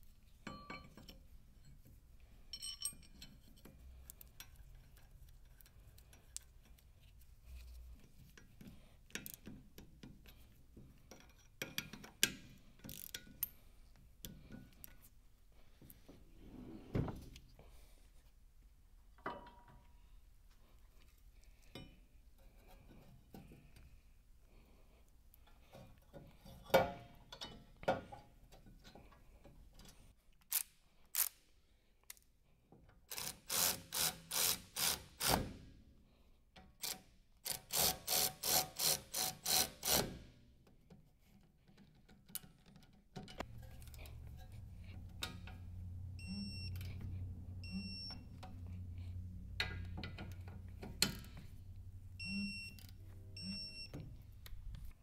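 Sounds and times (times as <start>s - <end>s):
rapid tool strokes: 37.5s - 40.1s
short high beeps: 46.2s - 46.8s, 52.2s - 52.8s.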